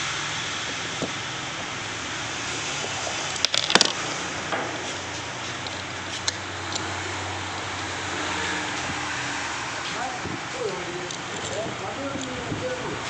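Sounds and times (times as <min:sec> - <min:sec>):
steady background hiss: 0:00.0 - 0:13.0
metallic clicks of parts handled: 0:03.4 - 0:04.0.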